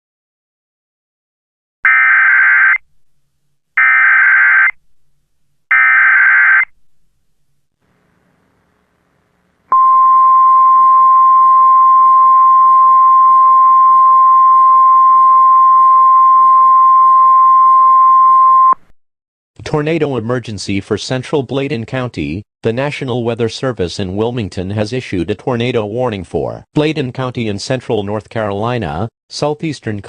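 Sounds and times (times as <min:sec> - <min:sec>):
steady attention tone: 0:02.8 - 0:18.8.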